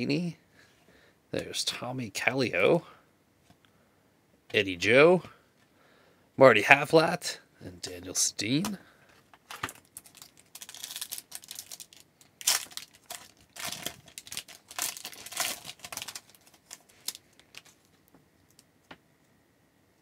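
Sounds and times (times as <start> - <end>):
wrapper crinkling and tearing: 9.5 - 18.6.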